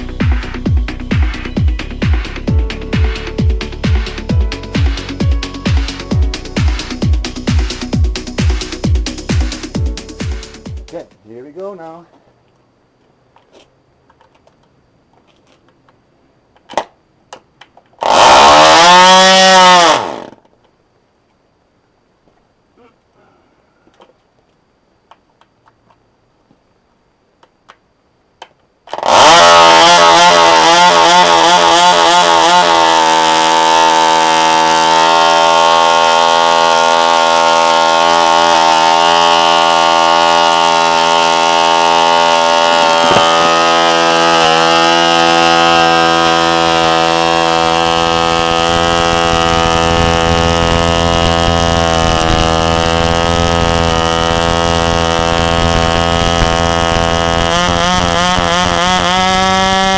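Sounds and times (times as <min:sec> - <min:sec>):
model engine running at high speed: 0:29.0 - 0:59.9.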